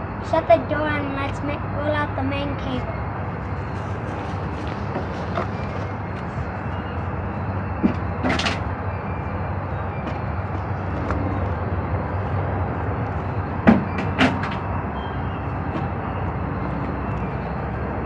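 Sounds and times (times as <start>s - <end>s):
steady outdoor rumble: 0.0s - 18.0s
sharp knocks: 13.6s - 14.6s.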